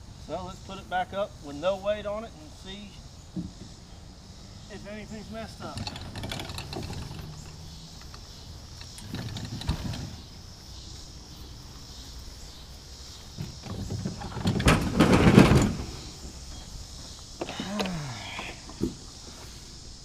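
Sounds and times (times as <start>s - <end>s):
rustle: 0.0s - 20.0s
scraping sliding clatter: 5.5s - 7.5s, 8.8s - 10.3s, 13.6s - 16.3s.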